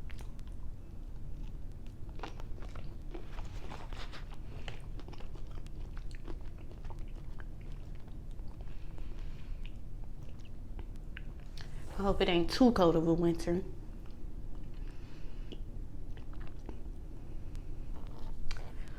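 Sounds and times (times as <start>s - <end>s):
biting and chewing: 0.0s - 11.7s, 13.9s - 18.9s
steady low hum: 0.0s - 18.9s
wet mouth clicks and smacks: 9.6s - 11.7s, 15.4s - 16.8s.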